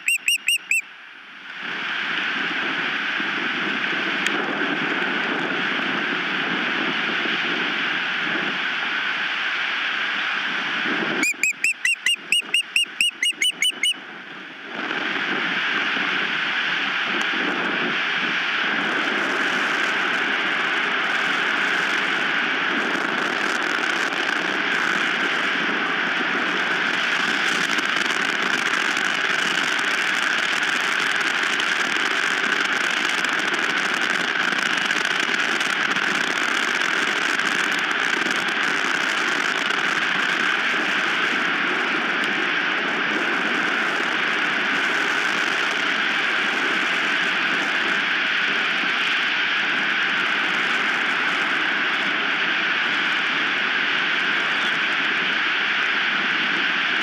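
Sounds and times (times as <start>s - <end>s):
osprey whistled alarm calls: 0.0s - 0.9s, 11.2s - 14.0s
wind across microphone: 1.5s - 11.6s, 12.2s - 57.0s.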